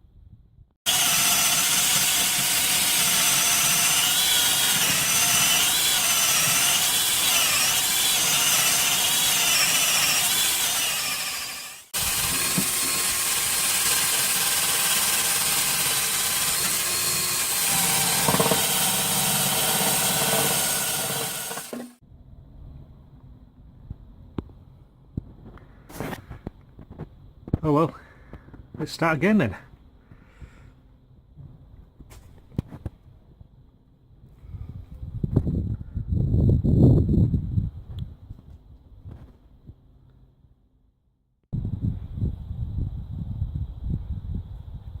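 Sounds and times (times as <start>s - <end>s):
power tool whining: 0.9s - 22.0s.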